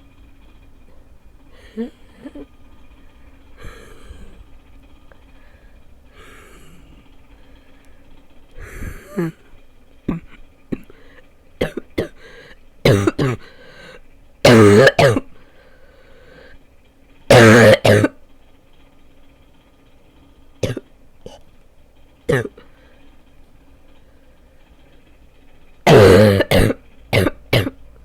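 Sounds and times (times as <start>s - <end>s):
person breathing: 3.6s - 4.6s, 5.2s - 9.3s, 12.2s - 12.6s, 13.4s - 14.1s, 15.4s - 16.7s
person barking cough: 12.9s - 13.5s, 14.5s - 15.2s, 25.9s - 27.7s.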